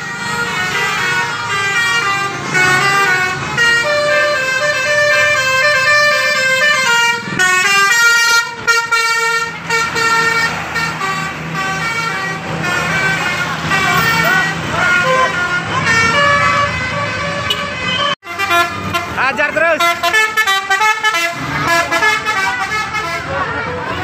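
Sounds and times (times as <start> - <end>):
musical air horn melody: 0.1 - 19.2, 19.8 - 23.9.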